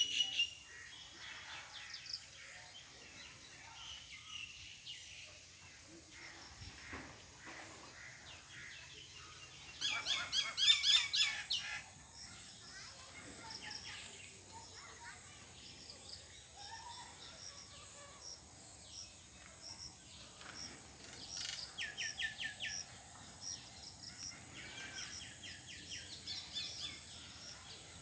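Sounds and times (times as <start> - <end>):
birds chirping: 6.1 - 28.0.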